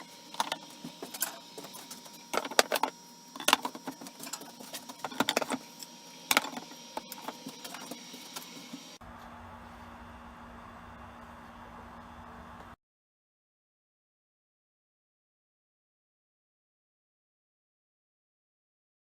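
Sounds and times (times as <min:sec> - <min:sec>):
hard objects clinking and clattering: 0:00.3 - 0:08.9.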